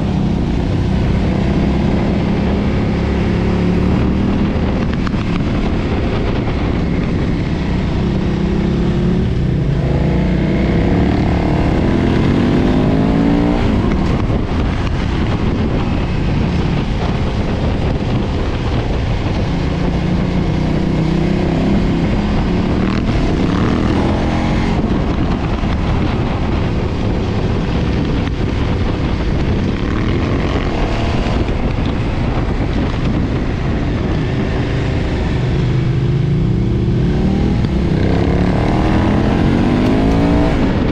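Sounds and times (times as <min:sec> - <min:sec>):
motorcycle engine accelerating: 0:00.0 - 0:40.9
wind noise on microphone: 0:00.0 - 0:40.9.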